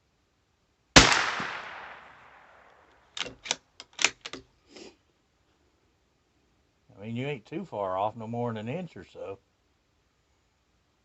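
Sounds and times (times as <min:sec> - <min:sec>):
loud gunshot with echo: 0:01.0 - 0:02.4.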